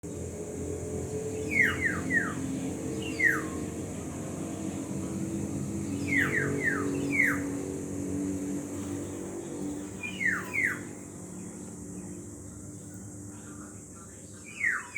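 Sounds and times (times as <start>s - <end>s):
birds whistling downward notes: 1.4s - 2.4s, 10.0s - 10.9s.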